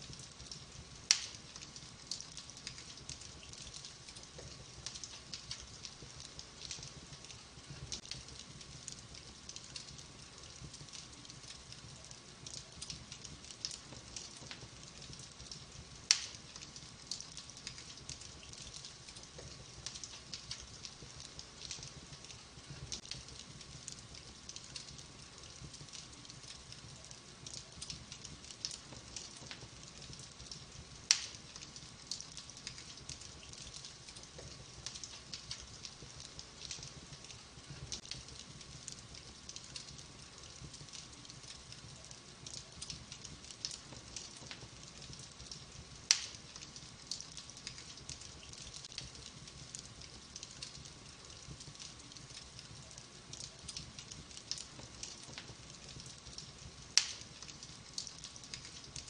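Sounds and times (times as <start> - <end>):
wood fire crackling: 0.0 - 59.0.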